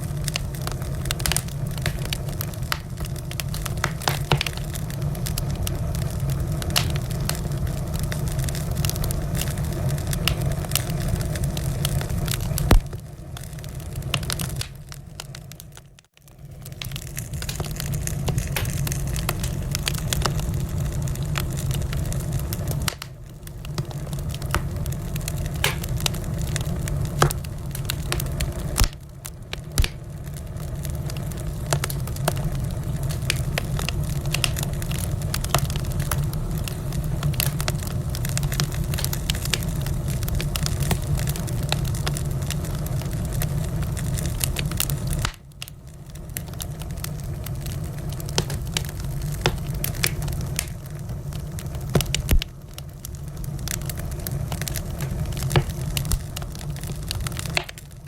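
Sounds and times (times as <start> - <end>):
low rumble and hiss: 0.0 - 58.0
wood fire crackling: 0.0 - 58.0.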